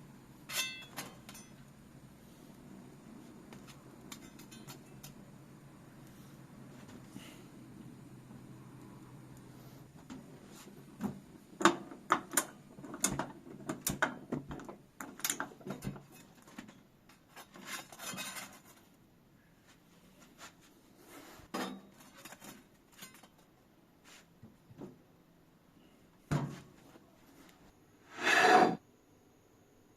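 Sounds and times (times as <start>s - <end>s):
utensils and dishes clinking: 0.5s - 1.7s, 4.1s - 5.2s.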